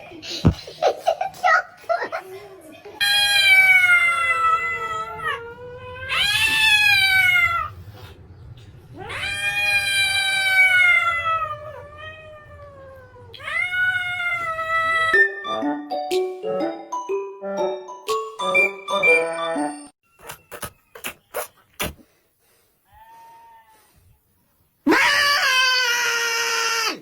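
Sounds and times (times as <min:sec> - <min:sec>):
cat yowling: 0:03.0 - 0:07.8, 0:09.0 - 0:15.2, 0:24.9 - 0:27.0.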